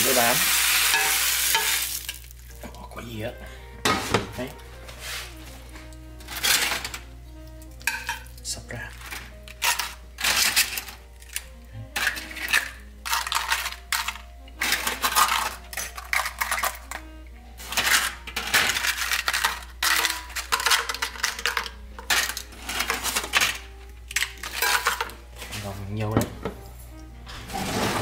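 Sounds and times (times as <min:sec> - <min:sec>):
metal utensil scraping frying pan: 0:06.2 - 0:07.0, 0:27.4 - 0:28.0.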